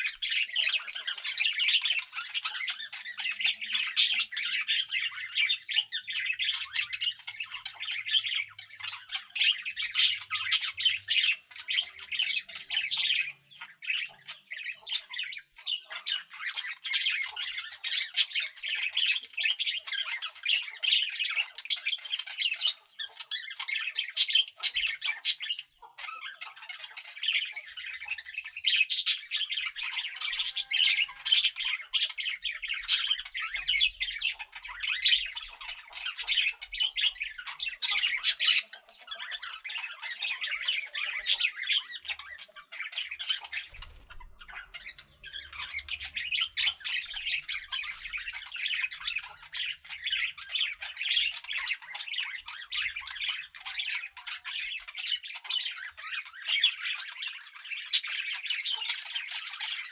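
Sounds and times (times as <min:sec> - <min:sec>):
budgerigars chattering and chirping: 0:00.0 - 0:59.9.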